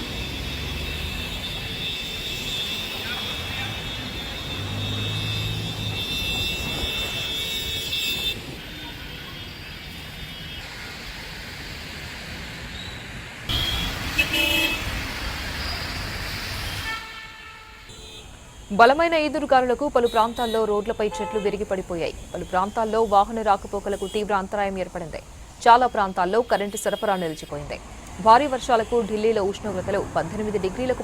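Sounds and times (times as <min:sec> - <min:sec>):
car horns: 0:00.0 - 0:10.8, 0:13.5 - 0:15.0, 0:16.6 - 0:19.1, 0:20.0 - 0:24.3, 0:25.8 - 0:27.6
road traffic: 0:00.0 - 0:31.0.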